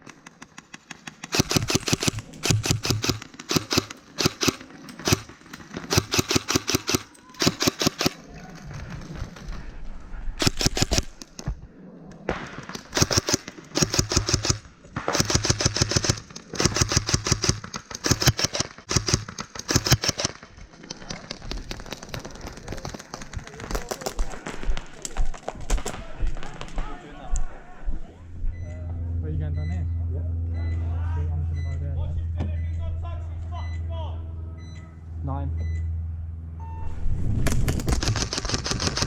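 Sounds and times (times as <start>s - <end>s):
airsoft guns firing bursts: 0.0s - 8.2s, 10.4s - 11.4s, 12.4s - 20.6s, 37.8s - 39.0s.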